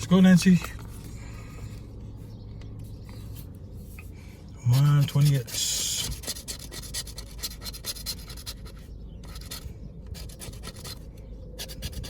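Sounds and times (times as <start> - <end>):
scratching lottery ticket: 4.6 - 12.0.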